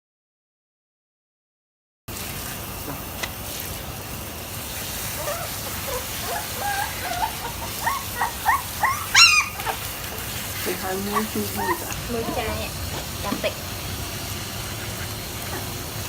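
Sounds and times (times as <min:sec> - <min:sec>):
steady rushing hiss: 0:02.1 - 0:16.0
puppies whimpering: 0:05.0 - 0:13.3, 0:14.2 - 0:16.0.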